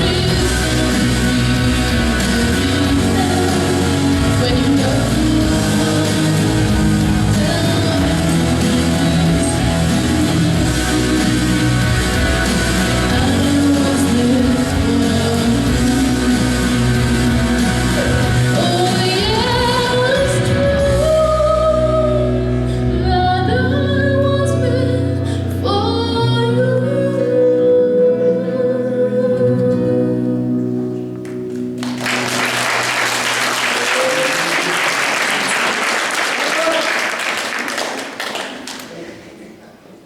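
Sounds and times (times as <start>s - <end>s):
woman singing a ballad: 0.0s - 30.6s
full band backing track: 0.0s - 36.0s.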